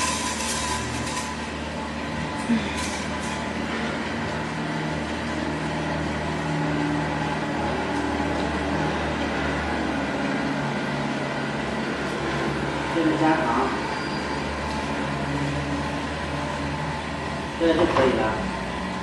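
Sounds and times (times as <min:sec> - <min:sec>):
popcorn machine mechanical hum: 0:00.0 - 0:19.0.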